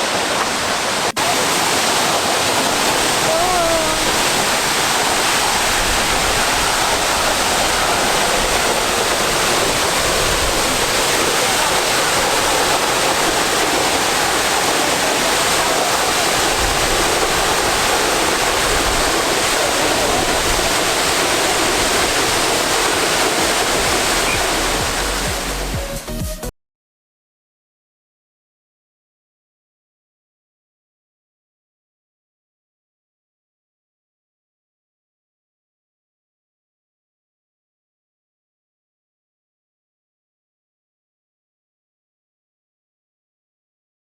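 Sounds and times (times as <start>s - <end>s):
waterfall rushing: 0.0s - 25.8s.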